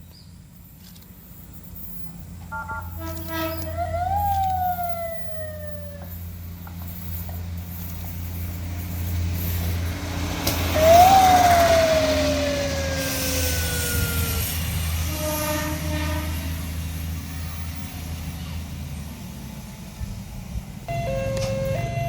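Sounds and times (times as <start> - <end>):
low engine rumble: 0.2 - 22.0
siren wailing: 2.5 - 6.2, 10.7 - 14.9
rushing noise: 9.2 - 15.2.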